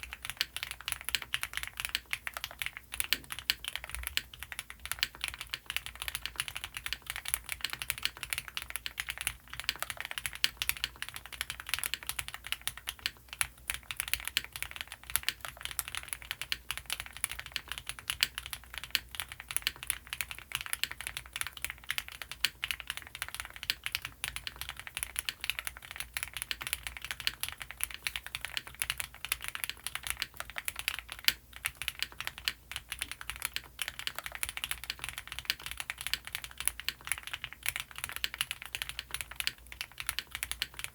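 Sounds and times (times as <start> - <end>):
fast mechanical keyboard typing: 0.0 - 40.9.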